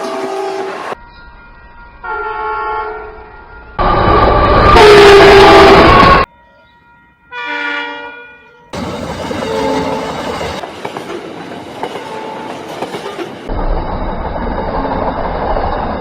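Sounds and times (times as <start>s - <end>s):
train horn blasts: 0.0s - 3.4s, 4.7s - 8.8s, 9.4s - 10.2s
rushing train noise: 0.0s - 16.0s.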